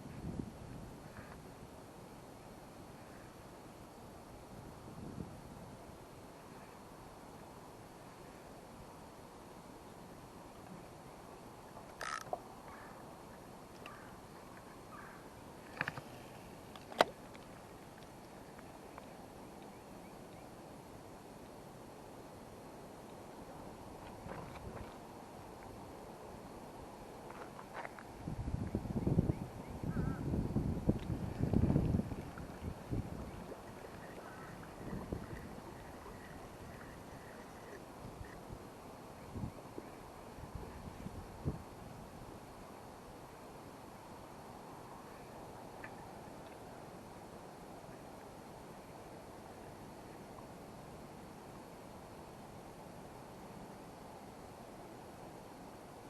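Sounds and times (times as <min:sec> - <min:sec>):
wind rumbling on microphone: 0:00.0 - 0:01.7, 0:04.4 - 0:06.0, 0:23.9 - 0:25.1, 0:27.4 - 0:42.6
wind: 0:00.0 - 0:56.0.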